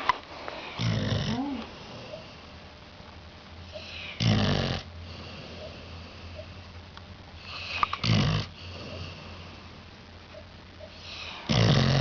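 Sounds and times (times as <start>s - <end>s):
loud rasping snores: 0.8s - 2.2s, 4.2s - 5.7s, 7.5s - 9.4s, 11.4s - 12.0s.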